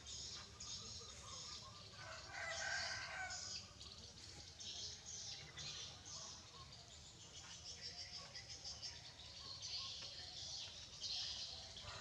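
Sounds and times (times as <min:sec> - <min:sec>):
rooster crowing: 0:02.0 - 0:03.5.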